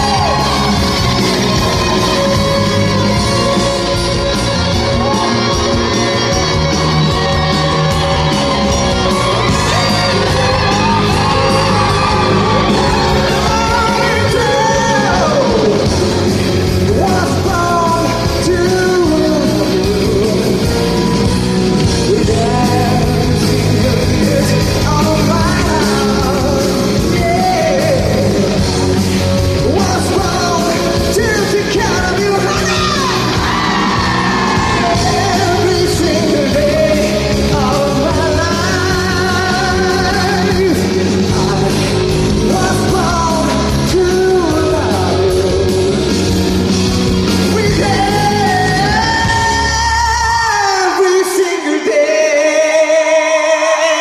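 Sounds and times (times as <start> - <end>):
singer belting high vocals: 0.0 - 46.7
rock band playing: 0.0 - 54.0.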